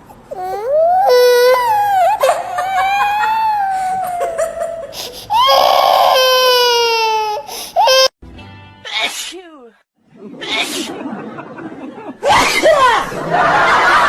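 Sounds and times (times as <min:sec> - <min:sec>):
baby crying: 0:00.0 - 0:08.2.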